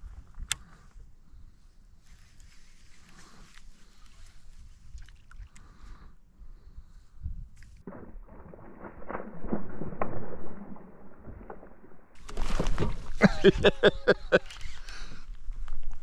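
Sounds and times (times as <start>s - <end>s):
water splashing and sloshing: 2.8s - 5.8s, 7.6s - 14.4s.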